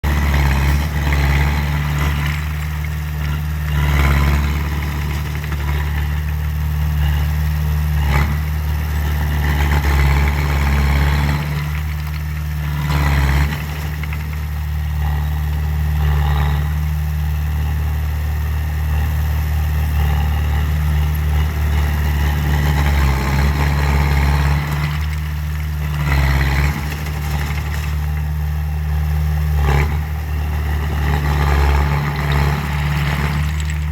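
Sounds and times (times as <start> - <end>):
bulldozer diesel engine running: 0.0 - 33.9
loud clatters: 9.5 - 14.8, 21.0 - 28.6, 31.0 - 33.9.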